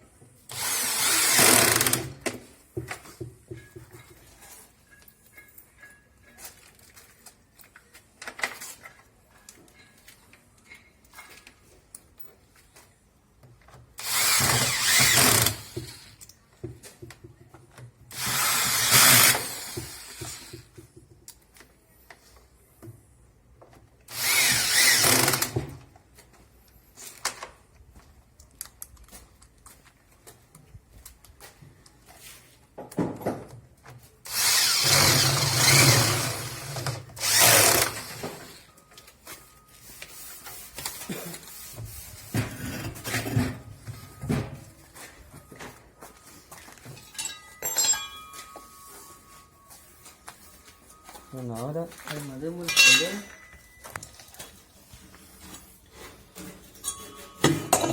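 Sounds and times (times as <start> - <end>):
power drill driving bolts: 0.5 - 2.4, 14.0 - 16.3, 18.1 - 20.8, 24.1 - 25.8, 34.2 - 38.7.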